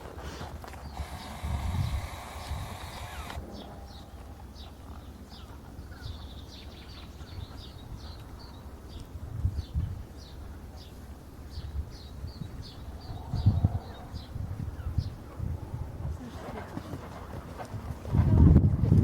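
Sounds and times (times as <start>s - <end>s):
small birds chirping: 0.8s - 15.2s.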